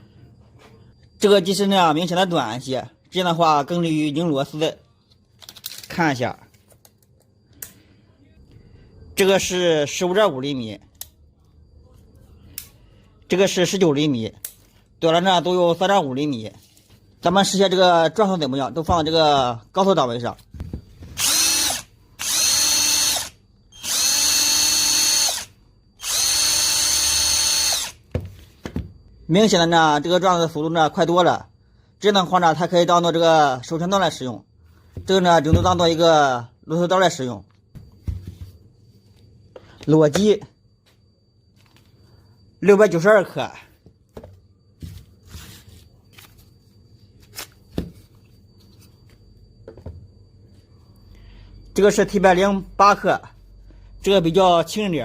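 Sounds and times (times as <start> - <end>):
cordless drill spinning: 21.2 - 28.0.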